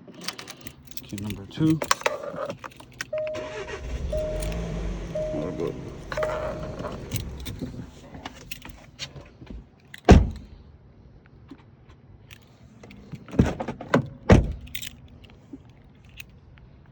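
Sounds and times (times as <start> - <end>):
car key fobs jangling: 0.1 - 9.0, 9.8 - 10.4, 14.4 - 16.4.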